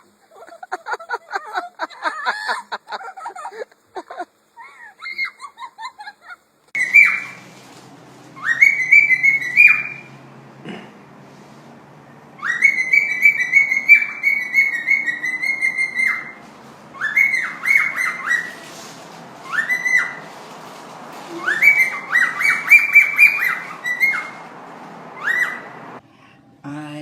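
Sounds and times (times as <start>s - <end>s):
parrot whistling: 6.8s - 7.6s, 8.3s - 10.3s, 12.3s - 20.6s, 21.2s - 26.0s.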